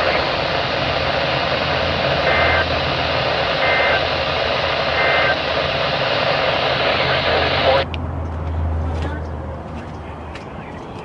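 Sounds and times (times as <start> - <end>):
screechy two-tone data bursts: 0.0 - 7.8
radio static hiss: 0.0 - 8.0.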